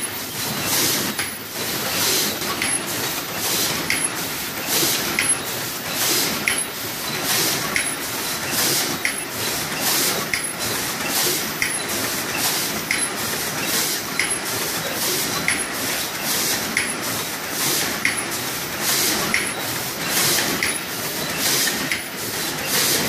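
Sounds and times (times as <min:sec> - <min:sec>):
constant mechanical run: 0:00.0 - 0:23.0.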